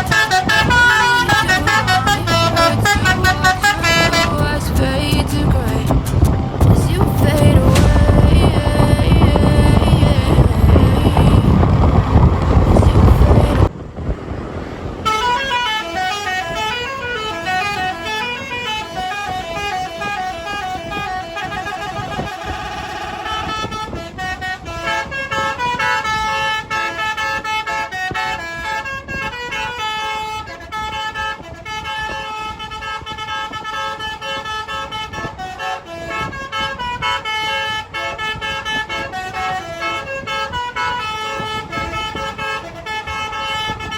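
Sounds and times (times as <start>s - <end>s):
bus air horn melody: 0.0s - 13.7s, 15.0s - 43.9s
loud rushing noise: 0.0s - 16.0s.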